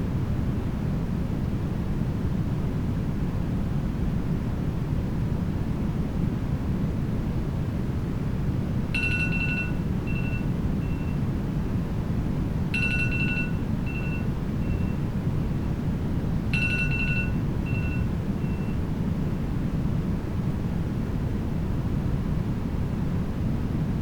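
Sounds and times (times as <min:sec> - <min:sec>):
steady brown noise: 0:07.2 - 0:24.0
electronic alarm beeps: 0:09.0 - 0:11.2, 0:12.8 - 0:15.0, 0:16.6 - 0:18.8.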